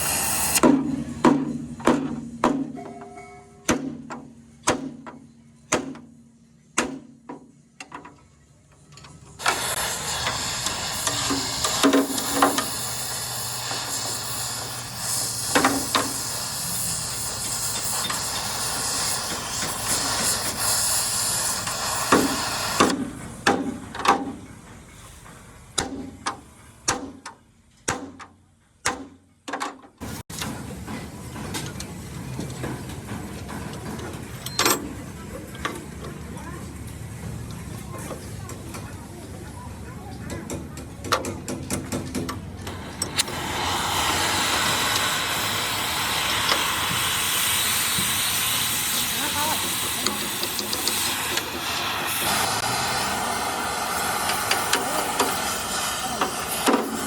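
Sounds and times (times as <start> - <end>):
loud steady hiss: 0.0 - 0.6, 9.4 - 24.0, 42.6 - 57.0
tool strikes on metal: 0.6 - 6.2, 6.8 - 8.1, 15.5 - 16.2, 22.1 - 24.4, 25.8 - 29.8.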